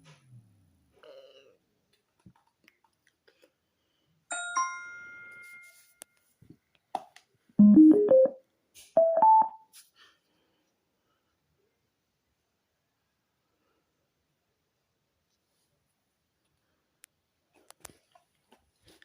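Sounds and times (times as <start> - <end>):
rising four-note jingle: 7.6 - 8.4
speaker chime: 7.6 - 8.4, 9.0 - 9.6
two-note rising beep: 7.6 - 8.4, 9.0 - 9.6.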